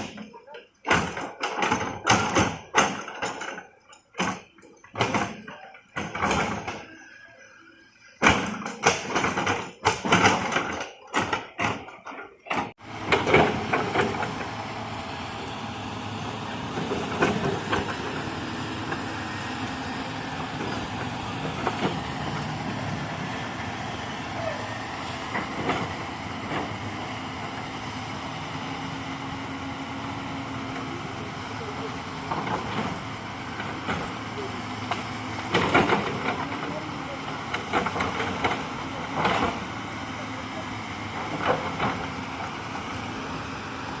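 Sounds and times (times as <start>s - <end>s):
knocks and clanks: 0.0s - 7.0s, 8.2s - 14.6s, 16.6s - 19.2s, 20.3s - 23.8s, 24.4s - 27.7s, 32.2s - 39.9s, 40.5s - 42.7s
heavy machine engine running: 0.0s - 44.0s.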